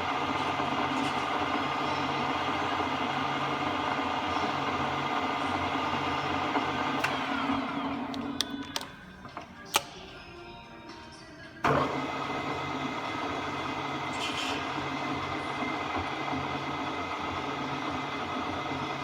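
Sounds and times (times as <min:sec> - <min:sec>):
milling machine switching on: 0:00.0 - 0:10.1
milling machine motor humming and whining: 0:00.0 - 0:10.4, 0:11.6 - 0:19.0.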